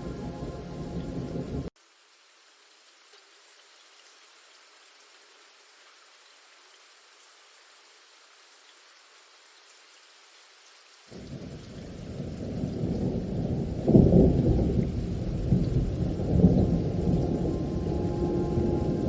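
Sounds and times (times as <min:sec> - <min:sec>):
thunder rumbling: 0:00.0 - 0:01.7, 0:11.2 - 0:19.0
rain hiss: 0:00.0 - 0:19.0.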